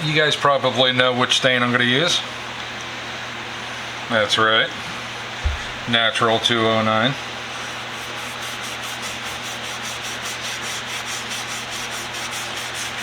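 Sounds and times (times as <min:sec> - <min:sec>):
steady low hum: 0:03.5 - 0:08.0.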